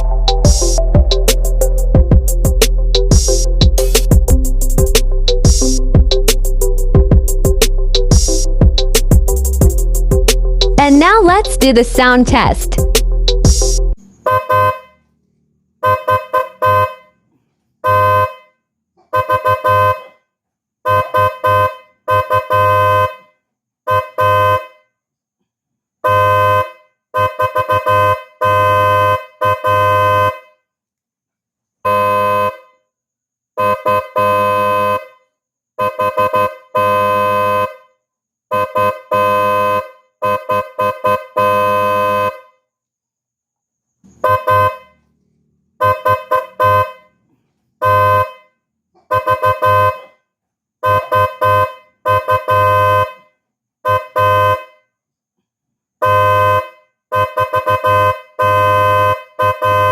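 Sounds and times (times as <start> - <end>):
car horn blasts: 14.2 - 15.1, 15.8 - 17.2, 17.9 - 18.6, 19.2 - 20.2, 20.9 - 24.8, 26.1 - 30.5, 33.6 - 35.2, 35.8 - 37.8, 38.5 - 42.5, 44.2 - 45.0, 45.8 - 47.2, 47.8 - 50.2, 50.8 - 53.3, 53.9 - 54.8, 56.0 - 59.9.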